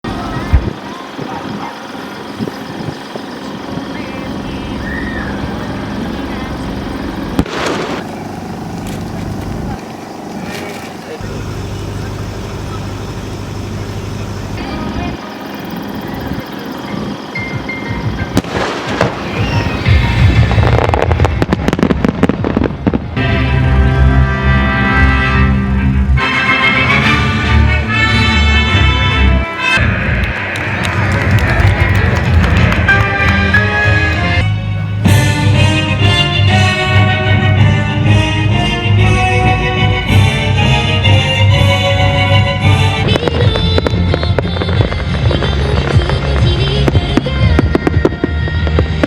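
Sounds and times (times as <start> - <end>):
crowd murmur: 0.0 - 49.0
firework crackling rush: 0.0 - 49.0
sharp firework bang: 7.4 - 8.5, 18.3 - 23.4
music: 16.6 - 21.6, 23.2 - 49.0.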